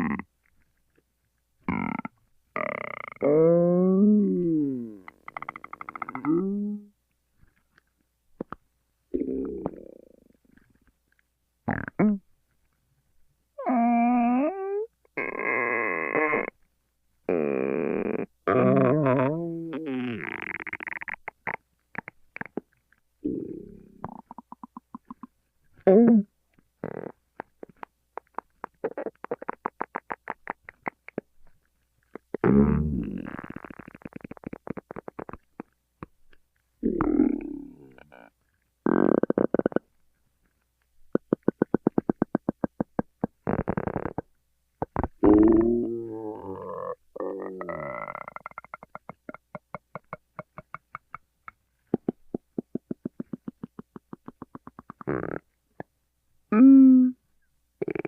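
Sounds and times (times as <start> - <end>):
stomach growling: 1.6 - 6.9, 8.4 - 10.9, 17.3 - 36.2, 36.8 - 39.9, 41.1 - 51.2, 51.9 - 55.9, 57.8 - 58.0.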